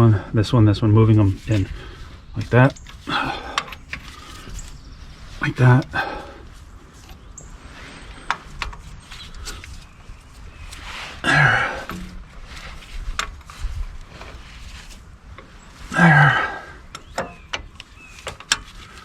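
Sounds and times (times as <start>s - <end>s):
man grunting: 11.2s - 11.9s, 15.9s - 16.8s.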